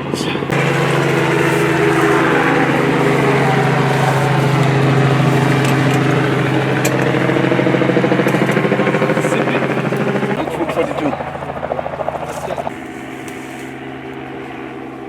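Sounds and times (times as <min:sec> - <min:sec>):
engine droning: 0:00.0 - 0:15.0.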